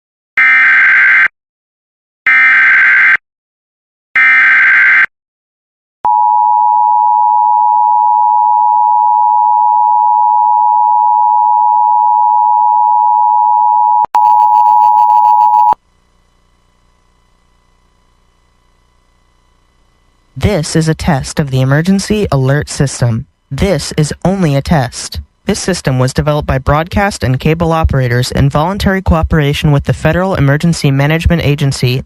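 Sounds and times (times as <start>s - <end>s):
steady attention tone: 6.1s - 15.8s
screechy data bursts: 14.2s - 15.8s.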